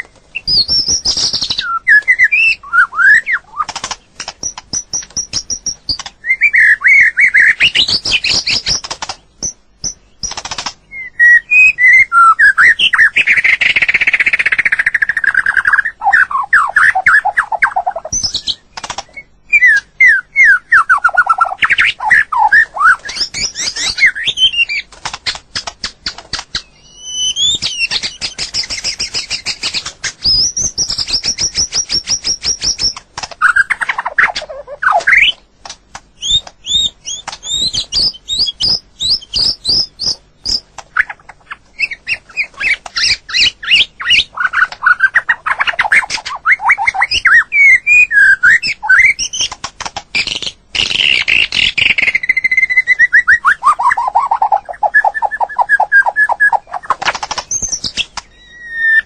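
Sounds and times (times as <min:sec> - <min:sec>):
bird singing whistled phrases: 0:00.0 - 0:03.7, 0:04.4 - 0:08.8, 0:09.4 - 0:24.9, 0:26.6 - 0:35.4, 0:36.2 - 0:49.5, 0:50.2 - 0:56.9, 0:57.5 - 0:59.0
fast rattling bird notes: 0:00.0 - 0:59.0.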